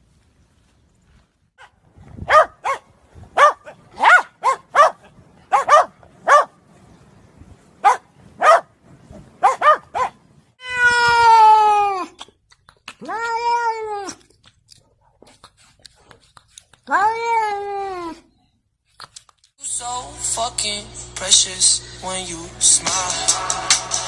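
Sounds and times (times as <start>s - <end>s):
small dog yapping: 2.3s - 2.8s, 3.4s - 6.5s, 7.8s - 8.6s, 9.4s - 10.2s.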